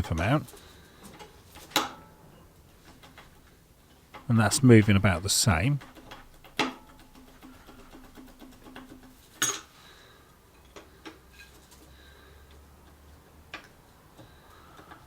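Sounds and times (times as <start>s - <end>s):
metal tool clinking on metal: 9.4s - 9.8s.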